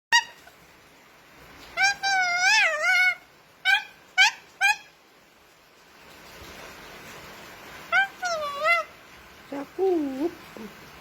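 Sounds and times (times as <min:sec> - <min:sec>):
cockatoo calling: 0:00.1 - 0:00.6, 0:01.7 - 0:05.0, 0:07.9 - 0:09.0.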